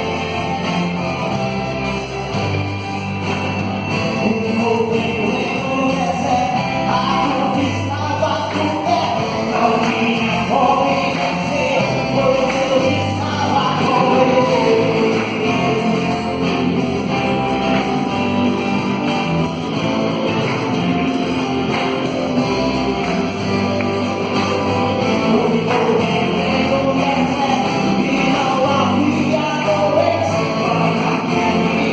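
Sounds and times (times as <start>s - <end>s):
gospel band playing: 0.0s - 31.9s
person singing: 3.9s - 17.3s, 20.4s - 31.9s.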